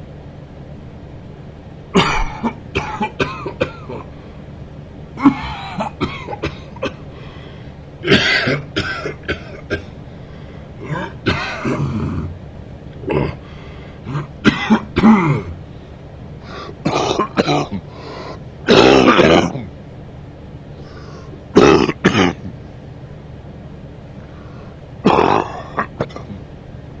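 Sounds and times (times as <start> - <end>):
faint low hum: 0.0 - 27.0
man coughing: 2.0 - 4.1, 5.2 - 7.1, 8.0 - 9.9, 10.8 - 12.3, 14.0 - 15.5, 16.5 - 18.0, 18.7 - 19.7, 21.5 - 22.6, 25.0 - 26.5.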